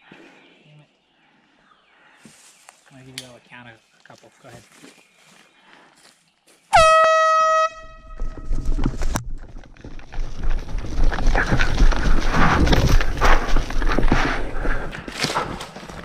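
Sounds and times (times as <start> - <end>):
footsteps and rustling: 3.8 - 6.7, 8.1 - 16.0
air horn blast: 6.7 - 8.4.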